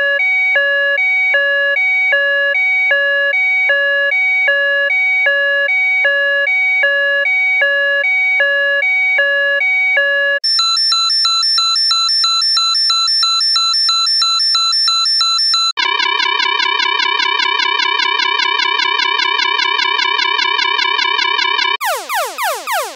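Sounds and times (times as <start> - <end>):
two-tone electronic alarm: 0.0 - 22.9
fast high two-tone alarm: 10.4 - 22.9
warbling alarm tone: 19.9 - 22.9.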